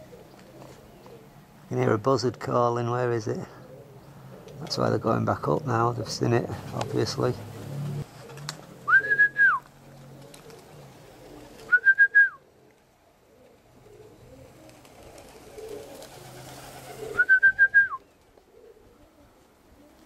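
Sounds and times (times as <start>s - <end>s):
buzzard mewing whistles: 8.9s - 9.6s, 17.0s - 18.0s.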